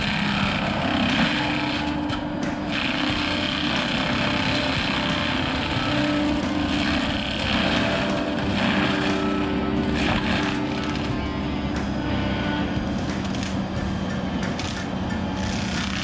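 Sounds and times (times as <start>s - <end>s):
diesel loader engine droning: 0.0s - 16.0s.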